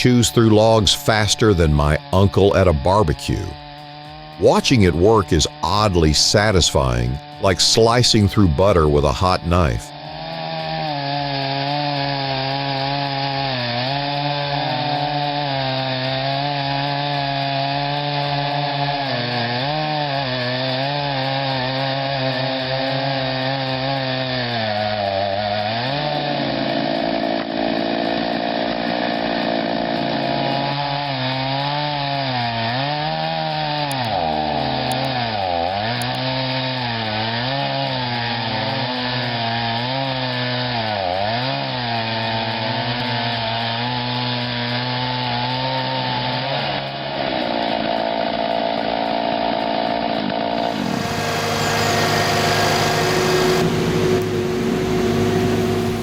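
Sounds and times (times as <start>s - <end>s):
log-processing machine engine: 46.8s - 56.0s.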